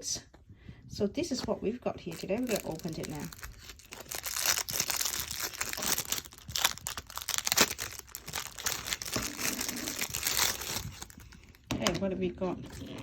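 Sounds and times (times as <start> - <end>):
packaging torn and crinkled: 2.1 - 11.7.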